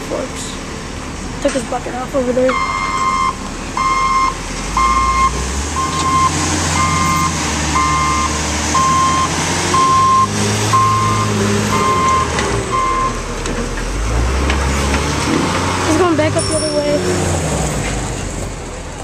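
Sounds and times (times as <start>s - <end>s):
diesel engine running: 0.0s - 19.0s
backup alarm beeping: 2.5s - 13.2s.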